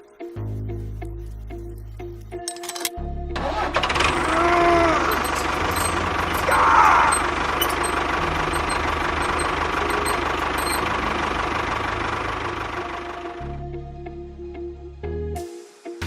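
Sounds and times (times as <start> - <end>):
cartoon machine engine running: 3.8 - 13.4
brief squeal: 4.1 - 11.0.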